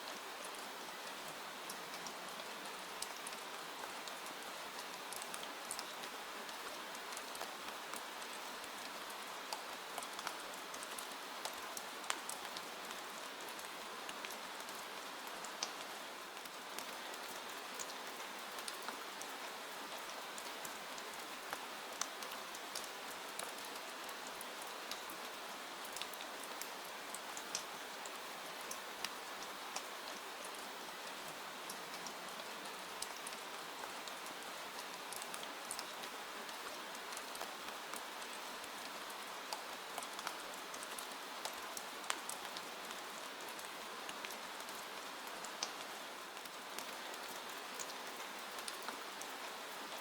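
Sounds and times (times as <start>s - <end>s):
steady rain hiss: 0.0s - 50.0s
raindrops ticking on a surface: 0.1s - 50.0s.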